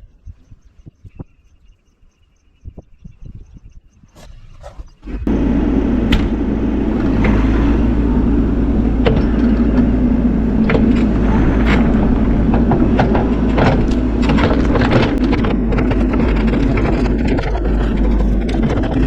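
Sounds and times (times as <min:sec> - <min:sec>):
excavator diesel engine running: 0:05.0 - 0:19.0
sharp clicks and cracks: 0:10.6 - 0:19.0.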